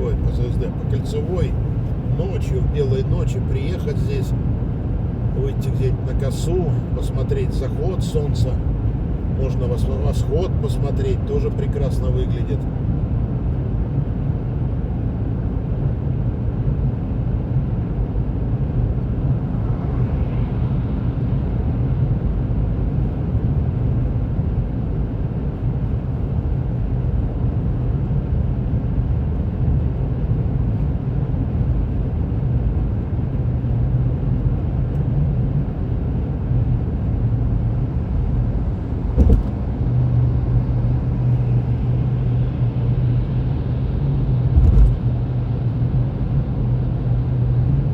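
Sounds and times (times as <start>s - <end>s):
car cabin road rumble: 0.0s - 14.8s, 18.5s - 47.9s
short knock: 39.2s - 39.6s, 44.5s - 45.0s.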